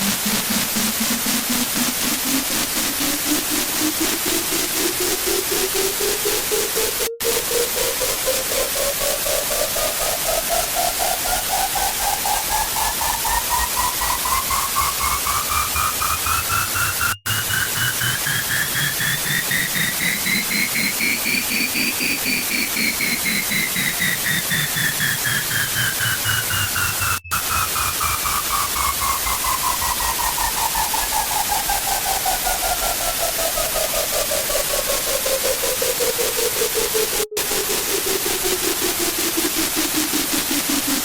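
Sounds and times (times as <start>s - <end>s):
harsh static noise: 0.0s - 31.0s.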